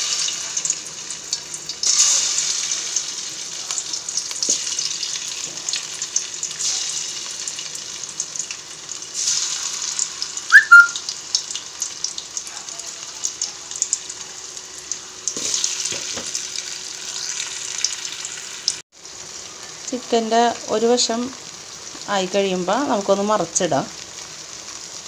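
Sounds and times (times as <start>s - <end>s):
chicken sizzling in hot oil: 0.0s - 25.0s
high squeaks: 10.5s - 11.0s.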